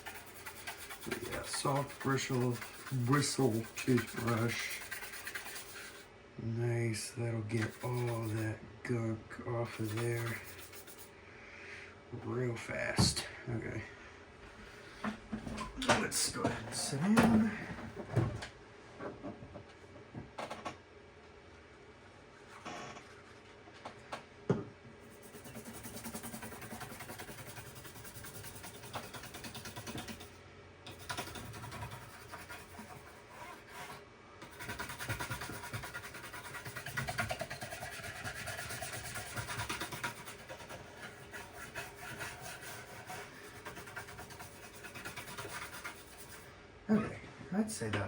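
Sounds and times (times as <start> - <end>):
toothbrush scrubbing: 0.0 - 6.0, 7.6 - 8.5, 9.7 - 11.1, 25.0 - 30.3, 30.9 - 46.5.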